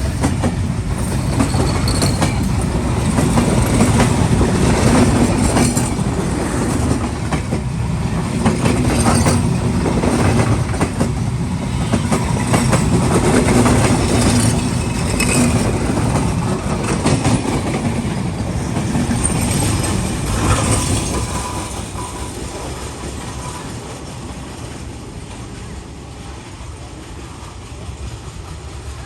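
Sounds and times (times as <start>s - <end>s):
train rolling past on rails: 0.0s - 29.0s.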